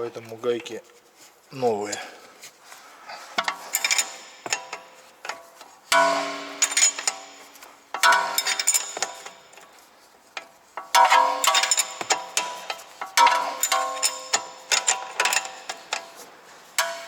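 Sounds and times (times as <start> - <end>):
steel tools clinking: 3.4 - 9.8, 10.8 - 17.0.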